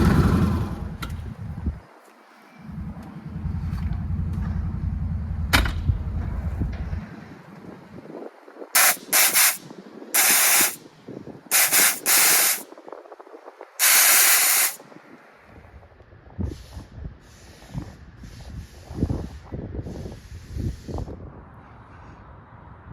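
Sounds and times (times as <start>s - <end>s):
purge valve hissing blasts: 8.8s - 10.8s, 11.5s - 12.7s, 13.8s - 14.8s.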